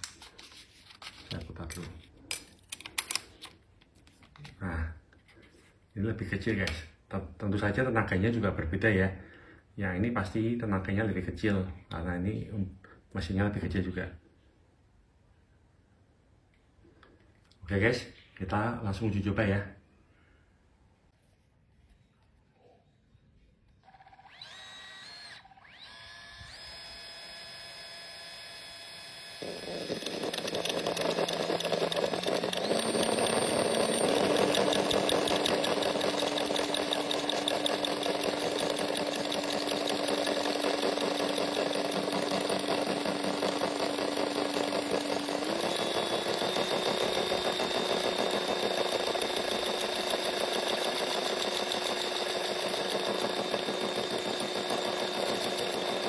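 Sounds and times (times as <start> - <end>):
reciprocating saw motor whirring: 23.9 - 56.0.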